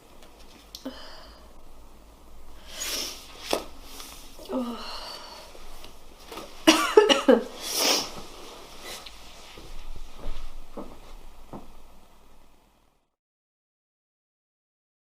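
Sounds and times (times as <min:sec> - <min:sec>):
hissing breaths: 0:02.6 - 0:05.8
man sniffing: 0:07.6 - 0:08.2.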